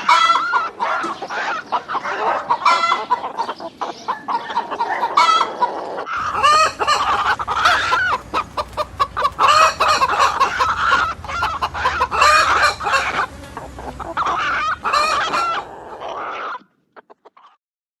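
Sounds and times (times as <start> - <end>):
chickens clucking: 0.0 - 17.6
low hum: 6.2 - 16.0.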